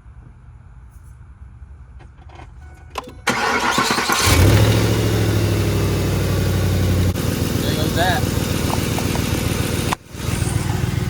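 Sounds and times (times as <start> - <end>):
engine cranking and idling: 2.2 - 11.0.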